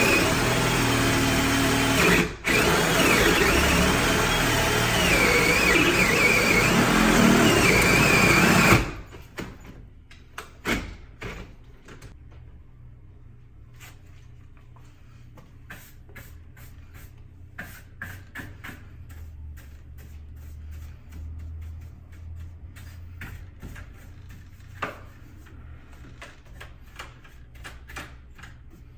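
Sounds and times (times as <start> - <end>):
power drill grinding: 0.0 - 9.1.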